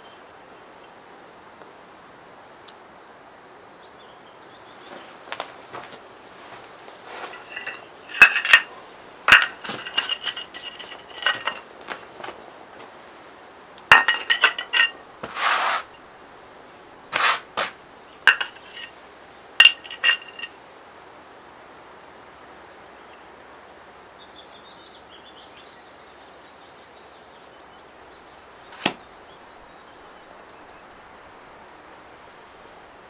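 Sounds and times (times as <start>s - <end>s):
metal objects clinking: 5.7s - 12.9s, 13.9s - 16.0s, 17.1s - 19.0s, 19.6s - 20.5s
metal scrape: 6.4s - 12.4s, 13.9s - 16.0s, 17.1s - 18.9s.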